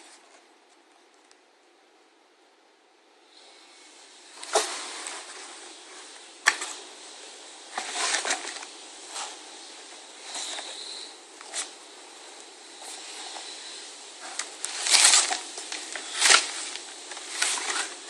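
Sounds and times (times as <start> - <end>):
paper packing rustling: 4.4 - 7.1, 7.7 - 18.0.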